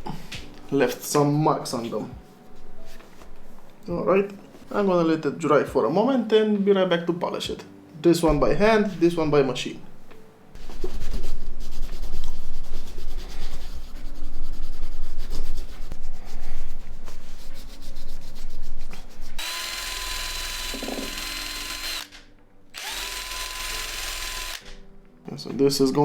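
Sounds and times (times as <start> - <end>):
rotary polishing tool whine: 19.4 - 22.1, 22.8 - 24.6.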